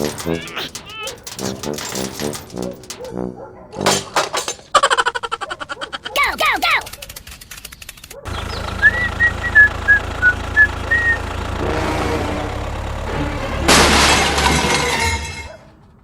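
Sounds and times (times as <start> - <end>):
vehicle engine running: 0.0 - 3.1, 8.3 - 14.6.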